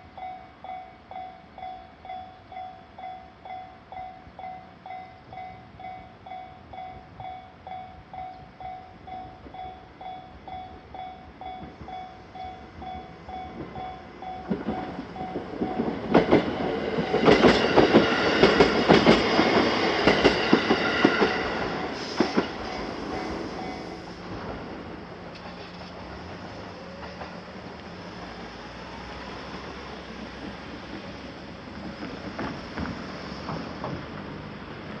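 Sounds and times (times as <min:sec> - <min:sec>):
train running noise: 0:00.0 - 0:35.0
train wheels clacking on rails: 0:07.7 - 0:35.0.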